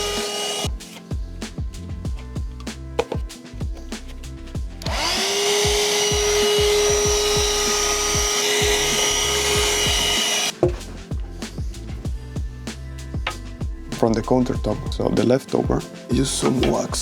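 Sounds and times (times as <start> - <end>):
vacuum cleaner whining: 0.0 - 0.7, 4.8 - 10.6
background music: 0.0 - 17.0.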